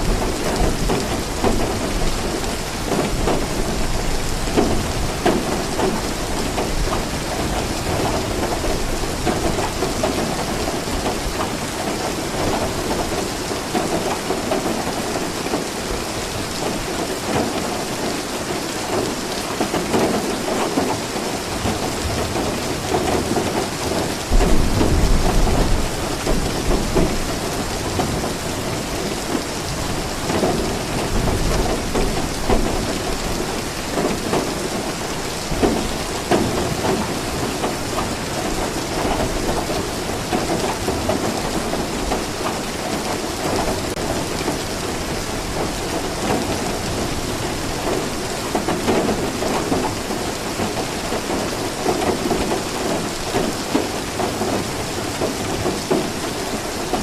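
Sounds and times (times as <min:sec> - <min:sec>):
heavy rain on a surface: 0:00.0 - 0:57.0
rolling thunder: 0:24.2 - 0:29.0.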